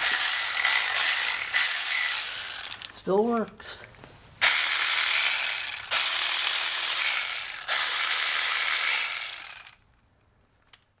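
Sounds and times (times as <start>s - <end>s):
cordless ratchet buzzing: 0.0s - 2.9s, 4.4s - 9.8s.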